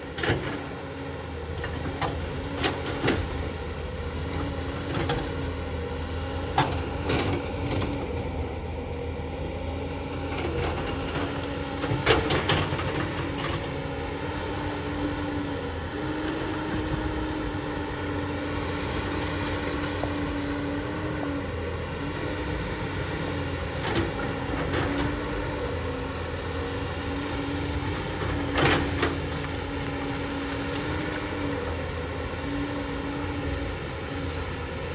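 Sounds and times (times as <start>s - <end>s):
excavator engine droning: 0.0s - 34.9s
hydraulic whine: 14.4s - 26.2s.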